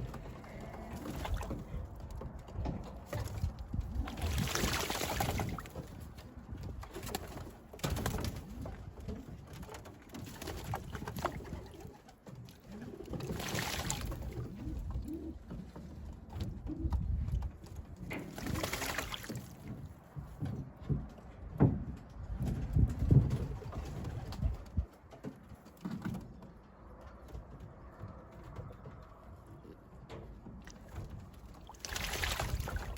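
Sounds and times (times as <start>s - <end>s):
birds splashing in water: 0.0s - 2.0s, 3.0s - 8.7s, 9.4s - 15.6s, 18.1s - 19.8s, 30.6s - 32.9s
pigeons cooing: 14.4s - 15.7s.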